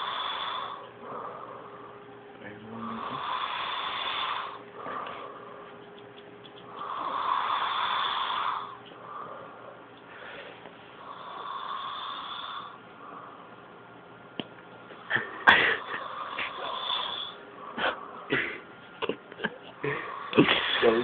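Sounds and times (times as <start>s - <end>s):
person snoring: 0.0s - 1.9s, 2.6s - 5.6s, 6.8s - 9.6s, 10.2s - 13.3s, 15.6s - 18.6s, 19.8s - 21.0s.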